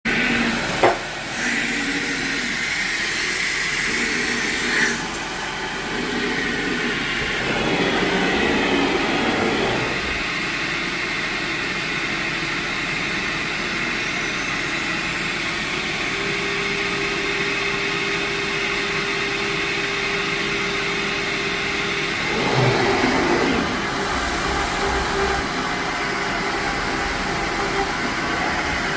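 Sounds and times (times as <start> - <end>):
steady motor tone: 0.1 - 10.7, 22.0 - 28.9
router machinery running: 0.1 - 28.9.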